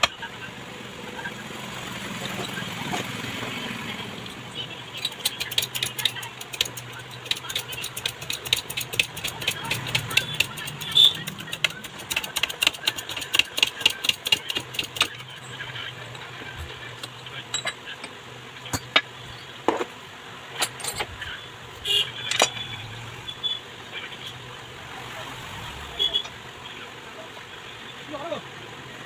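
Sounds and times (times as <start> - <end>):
rapid metallic clicking: 5.0 - 15.4
small metal parts clinking: 20.6 - 21.1, 22.3 - 22.6.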